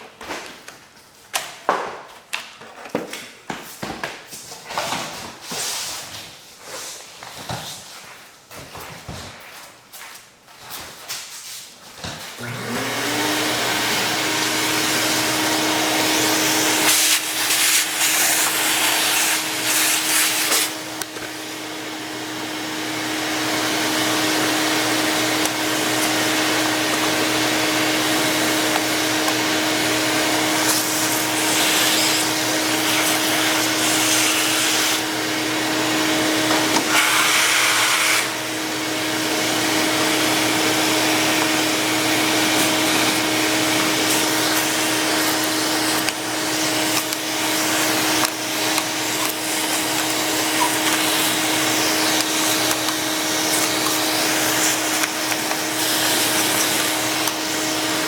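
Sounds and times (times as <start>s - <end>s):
vacuum cleaner running: 12.0s - 58.0s.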